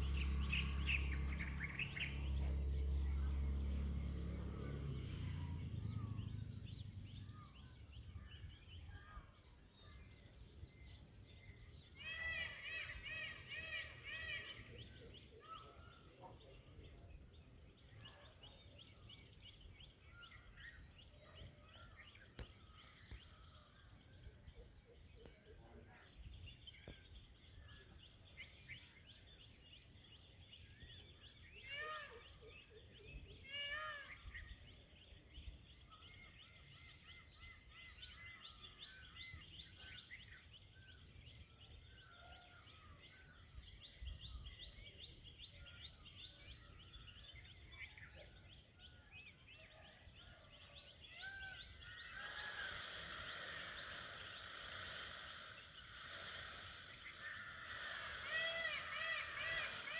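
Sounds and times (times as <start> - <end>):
loud bird calls: 0.0 - 59.9
small birds chirping: 0.0 - 59.9
pulsing insect buzz: 51.9 - 59.9.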